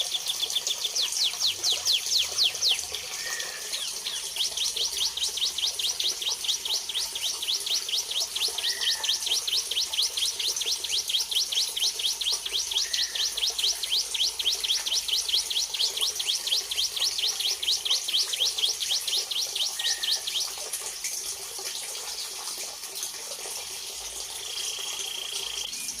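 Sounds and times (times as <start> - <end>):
lower single bird chirps: 0.0 - 20.5.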